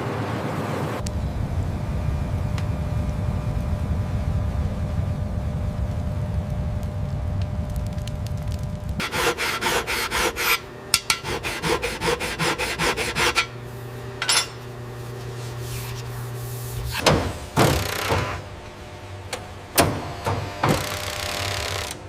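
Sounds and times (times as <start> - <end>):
steady low hum: 0.2 - 20.7
rasping strokes: 9.0 - 13.6.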